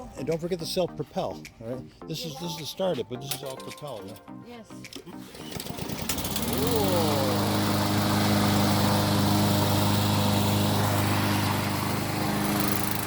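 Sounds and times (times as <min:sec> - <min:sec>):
lawnmower engine starting and running: 0:05.0 - 0:13.0.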